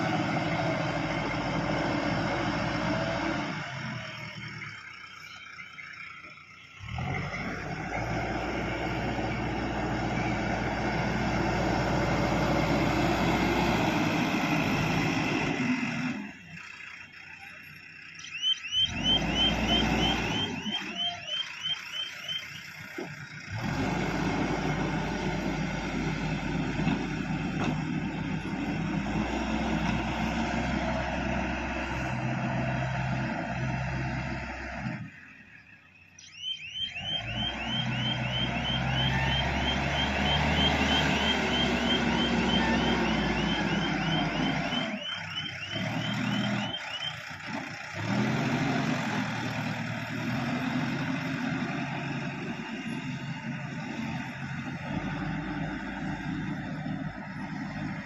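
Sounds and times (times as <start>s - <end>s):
excavator diesel engine running: 0.0s - 58.0s
chirping electronic alarm: 4.0s - 6.9s, 18.2s - 22.8s, 36.1s - 47.4s.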